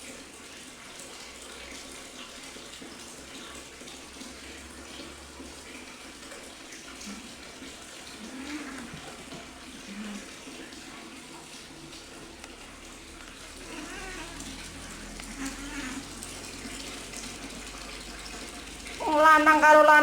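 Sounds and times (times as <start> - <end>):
tomcats yowling: 8.2 - 9.2, 13.6 - 16.2.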